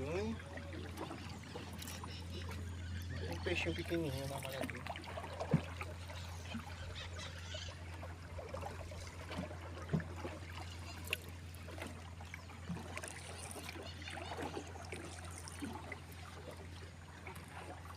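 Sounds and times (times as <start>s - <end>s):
water lapping around boat: 0.0s - 17.9s
knocks against hull: 5.4s - 5.8s.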